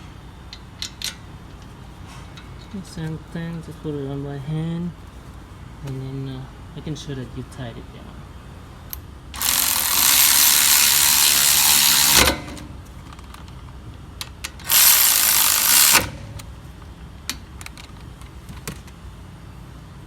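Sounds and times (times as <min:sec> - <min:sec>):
tool handling clicks: 0:00.5 - 0:02.5, 0:08.9 - 0:19.0
cordless power tool whirring: 0:09.4 - 0:12.9, 0:14.6 - 0:16.5.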